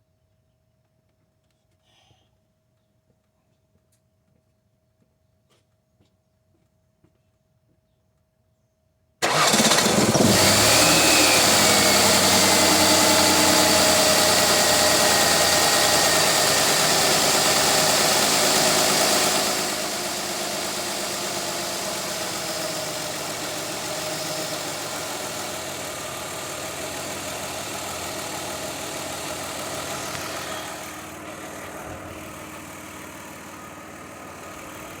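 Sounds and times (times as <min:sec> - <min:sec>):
car engine starting and idling: 0:09.2 - 0:35.0.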